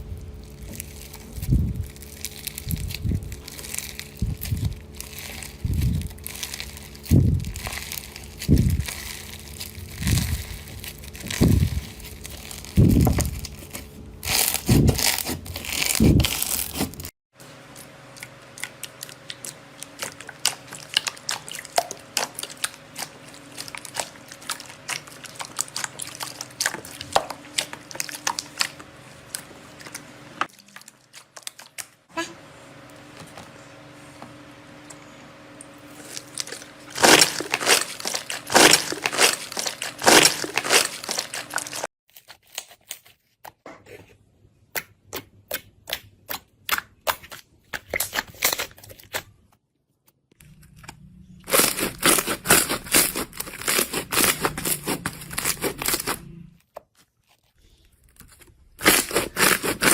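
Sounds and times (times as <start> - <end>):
slime squelching: 17.7 - 32.3, 35.7 - 41.9, 50.4 - 56.4, 57.1 - 59.9.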